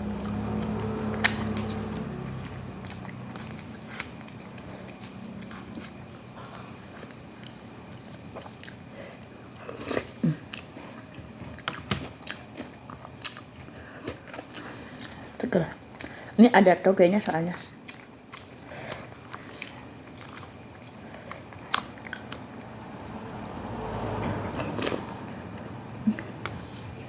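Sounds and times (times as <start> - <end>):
chewing noodles: 0.0 - 16.4, 17.2 - 27.0
wet mouth clicks: 0.2 - 5.8.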